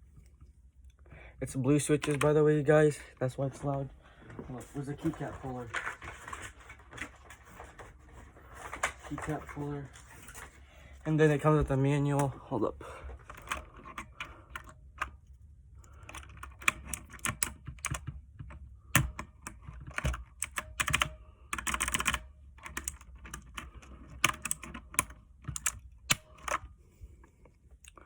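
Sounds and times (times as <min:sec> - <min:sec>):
clicky mechanical keyboard typing: 0:15.8 - 0:26.7.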